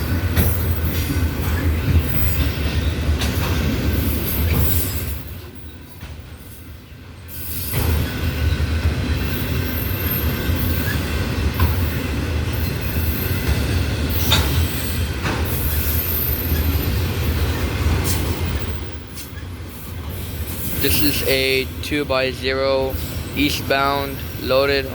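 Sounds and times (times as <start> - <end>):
rail cars rumbling past: 0.0 - 24.9
high wheel squeal: 7.4 - 11.4.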